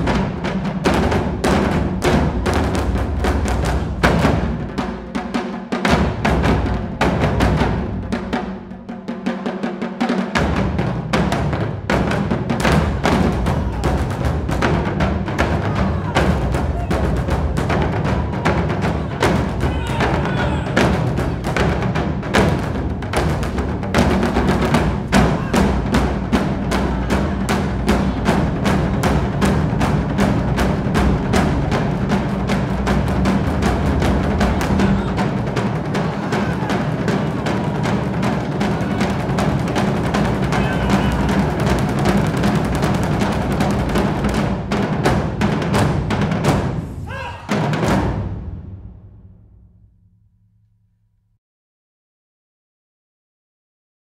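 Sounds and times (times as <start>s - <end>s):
taiko drums playing fast rhythm: 0.0s - 49.7s.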